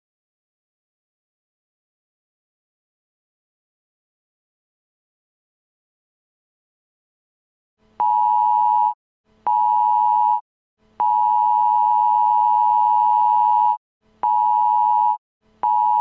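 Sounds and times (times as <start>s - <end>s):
two-tone attention beeps: 11.0s - 16.0s.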